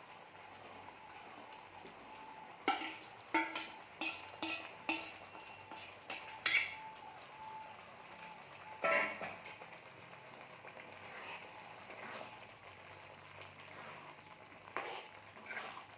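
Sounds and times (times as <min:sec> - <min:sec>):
faint low sizzle: 0:00.0 - 0:15.9
metal spoon clanking against pan: 0:02.7 - 0:06.9.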